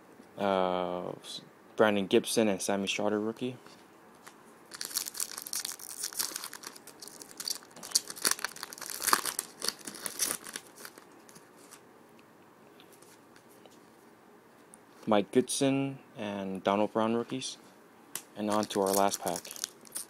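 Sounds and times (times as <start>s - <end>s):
foil wrapper crinkling and tearing: 4.7s - 11.8s, 18.5s - 20.0s.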